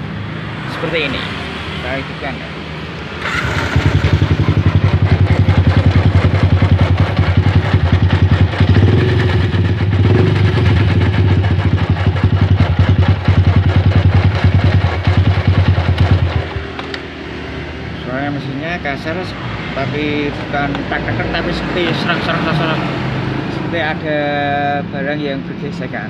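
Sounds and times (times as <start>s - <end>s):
motorcycle engine idling roughly: 3.2s - 16.9s.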